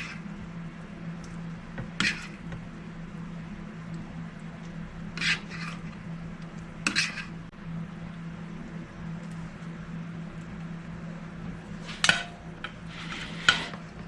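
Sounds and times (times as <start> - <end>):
utensil scraping a dish: 0.0 - 0.3, 2.0 - 2.5, 5.1 - 6.0, 6.8 - 7.4, 11.8 - 14.0
low hum: 0.0 - 14.0.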